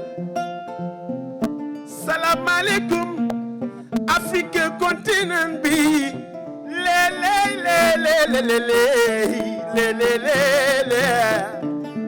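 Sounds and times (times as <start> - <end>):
plucked string instrument: 0.0 - 12.0
person singing wavering vocals: 4.1 - 11.6.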